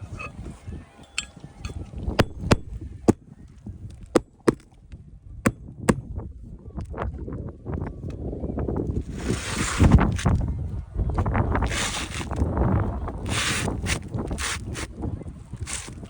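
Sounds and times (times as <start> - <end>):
wind rumble on microphone: 0.0 - 16.0
sharp knocks: 2.2 - 2.8, 4.2 - 4.7.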